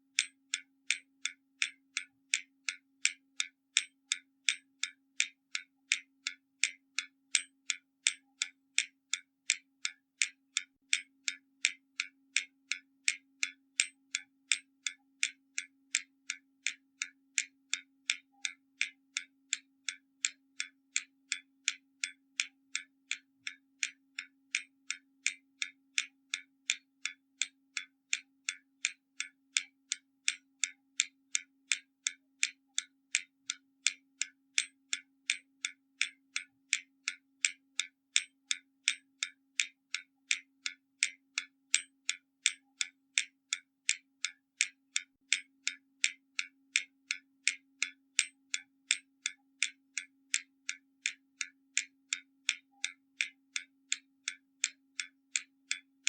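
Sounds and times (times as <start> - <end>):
mechanical clock ticking: 0.0 - 55.9.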